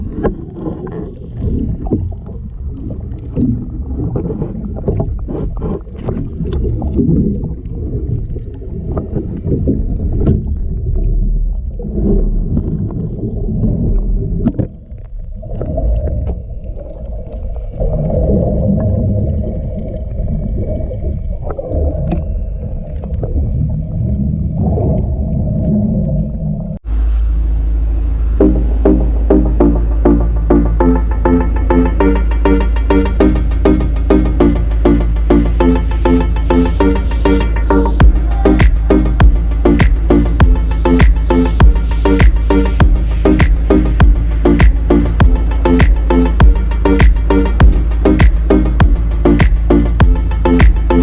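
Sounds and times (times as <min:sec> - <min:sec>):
water slapping against hull: 0:00.0 - 0:19.0, 0:38.0 - 0:50.9
boat motor drone: 0:26.8 - 0:51.0.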